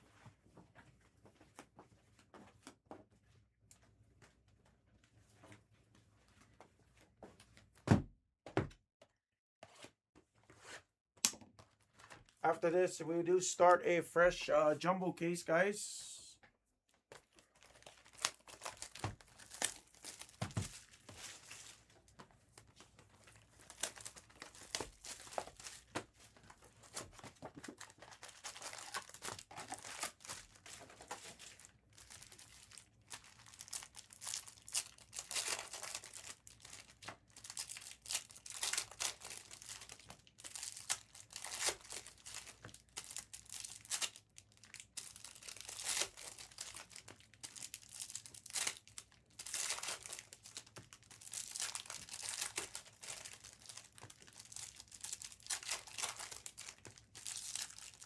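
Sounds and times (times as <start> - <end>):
foil wrappers tearing and crinkling: 17.6 - 21.9, 23.2 - 25.9, 26.5 - 58.0.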